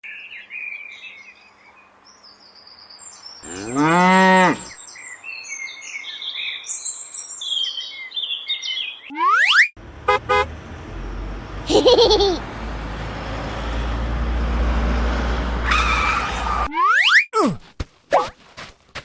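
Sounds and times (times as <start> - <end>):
cow mooing: 3.5 - 4.7.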